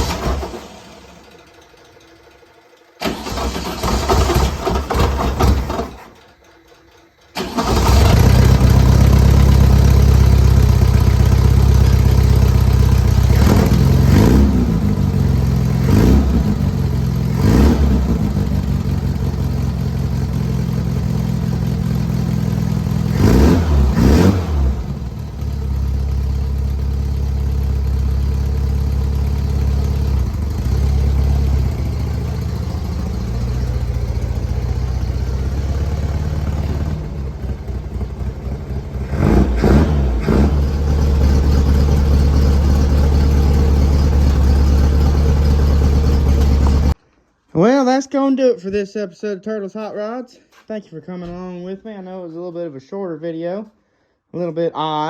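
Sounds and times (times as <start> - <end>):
engine cranking on starter: 0.0 - 47.0
car engine revving and idling: 7.6 - 47.0.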